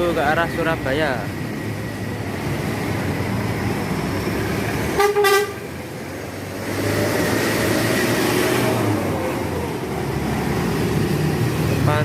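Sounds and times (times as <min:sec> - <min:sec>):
bus engines running: 0:00.0 - 0:12.0
road noise: 0:00.0 - 0:12.0
bus horn honking: 0:04.9 - 0:05.7.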